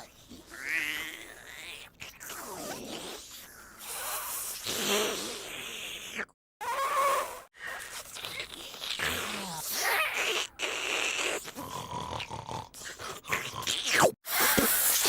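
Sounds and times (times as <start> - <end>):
toy vacuum sucking and snuffling: 14.3 - 15.0.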